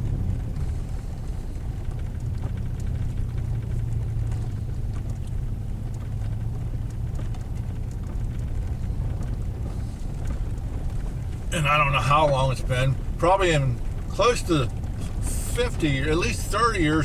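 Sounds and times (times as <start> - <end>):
small ticks and rattles: 0.0 - 11.5
truck engine and road rumble: 0.0 - 17.0.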